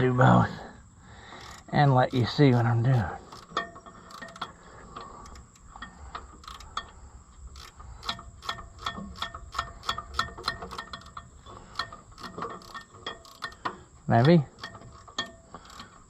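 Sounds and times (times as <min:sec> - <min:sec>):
ratchet wrench clicking: 0:01.3 - 0:16.0.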